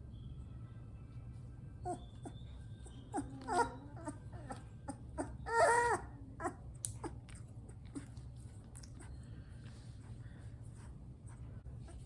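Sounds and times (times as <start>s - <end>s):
puppy crying: 1.8s - 8.2s.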